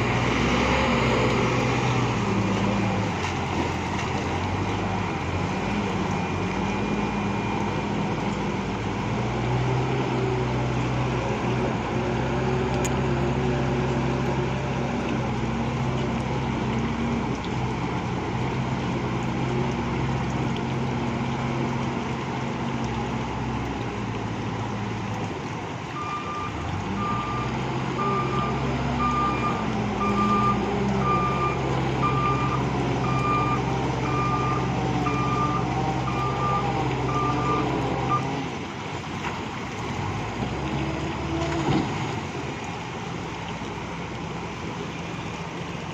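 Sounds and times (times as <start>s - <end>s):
backhoe diesel engine running: 0.0s - 45.9s
reversing alarm beeping: 26.0s - 38.3s.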